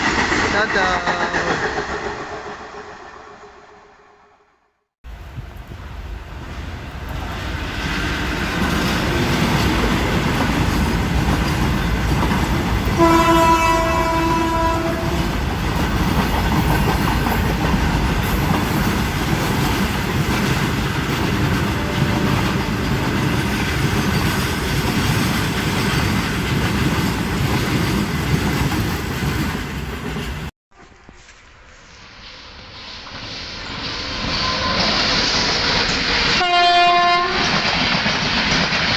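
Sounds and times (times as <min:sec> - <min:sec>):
train clattering over rails: 0:05.1 - 0:30.5, 0:33.8 - 0:38.9
train horn: 0:12.9 - 0:15.3, 0:21.6 - 0:23.2, 0:36.3 - 0:37.6.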